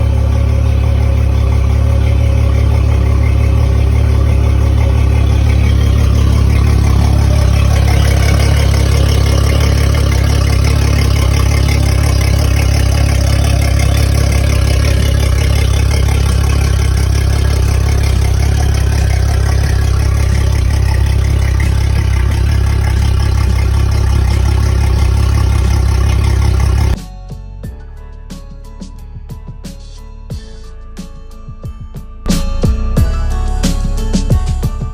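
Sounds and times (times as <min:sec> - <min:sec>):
outboard engine running: 0:00.0 - 0:27.0.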